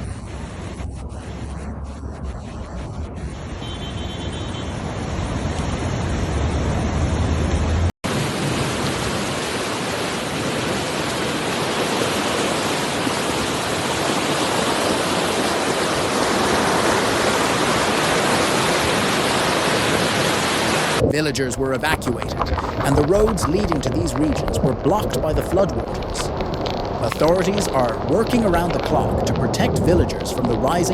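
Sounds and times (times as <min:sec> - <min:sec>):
low rumble: 0:00.0 - 0:03.6, 0:21.0 - 0:30.9
rushing floodwater roar: 0:04.8 - 0:30.9.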